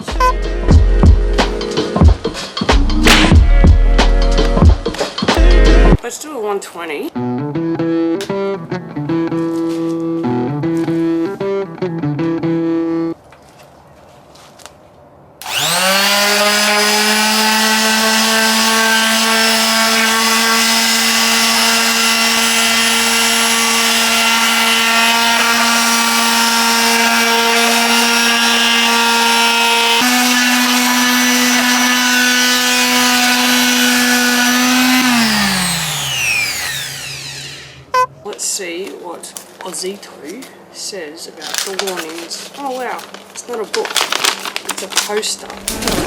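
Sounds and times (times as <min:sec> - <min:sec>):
palm sander whirring: 0:15.4 - 0:38.1, 0:45.5 - 0:46.0.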